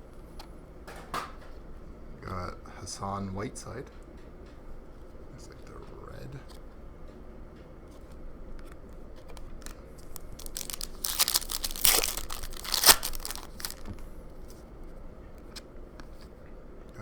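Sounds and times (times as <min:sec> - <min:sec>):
card pack wrapper tearing and crinkling: 0:09.4 - 0:14.0.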